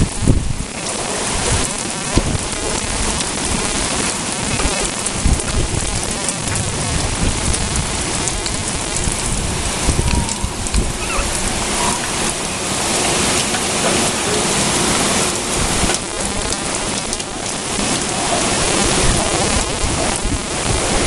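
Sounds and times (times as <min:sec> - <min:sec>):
steady rain falling: 0:00.0 - 0:21.0.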